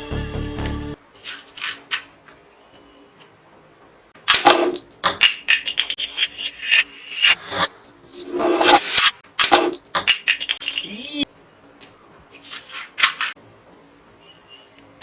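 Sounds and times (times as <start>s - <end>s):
background music: 0.0s - 1.0s.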